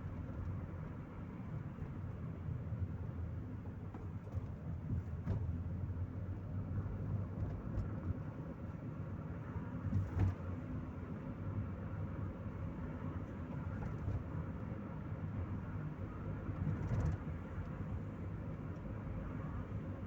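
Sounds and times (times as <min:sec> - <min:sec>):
road noise: 0:00.0 - 0:20.0
thump from the road: 0:03.9 - 0:05.6, 0:09.8 - 0:10.6, 0:13.6 - 0:14.3, 0:16.6 - 0:17.3.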